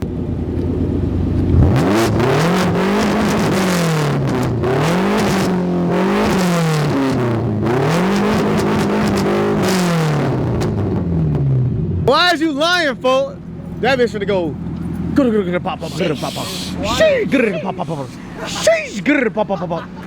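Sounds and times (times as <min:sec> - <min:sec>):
car engine revving hard: 0:01.5 - 0:10.9.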